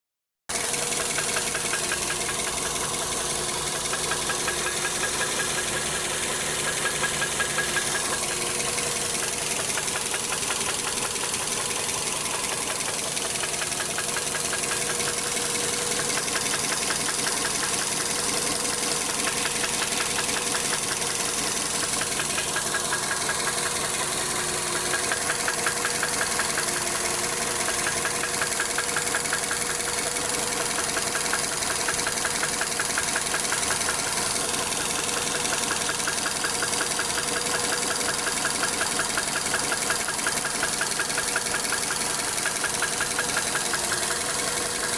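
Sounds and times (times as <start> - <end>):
engine running with fast knocking: 0.5 - 44.9.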